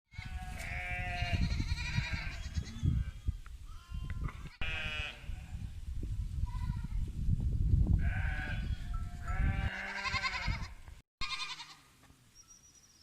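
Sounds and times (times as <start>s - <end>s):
sheep bleating: 0.1s - 3.2s, 3.8s - 5.3s, 8.0s - 11.8s.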